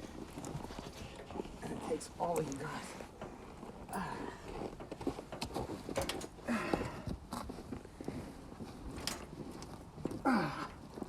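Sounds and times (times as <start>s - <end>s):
man grunting with effort: 10.2s - 10.8s.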